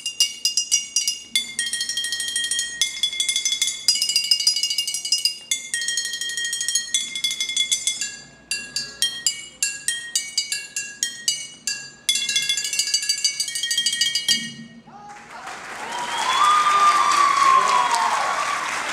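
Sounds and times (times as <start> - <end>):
glass bottles struck in a melody: 0.0 - 14.9.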